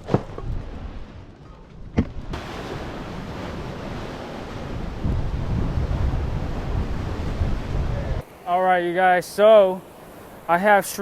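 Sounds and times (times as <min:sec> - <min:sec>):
wind on microphone: 0:00.0 - 0:08.3
ocean surf washing ashore: 0:02.2 - 0:11.0.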